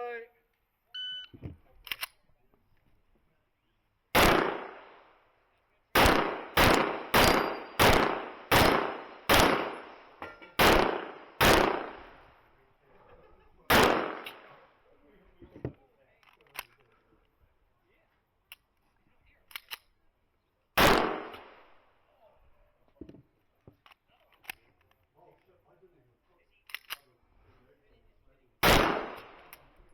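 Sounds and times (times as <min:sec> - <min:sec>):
handgun shots echoing: 0:04.2 - 0:05.0, 0:06.0 - 0:12.2, 0:13.7 - 0:14.6, 0:20.8 - 0:21.6, 0:28.6 - 0:29.8.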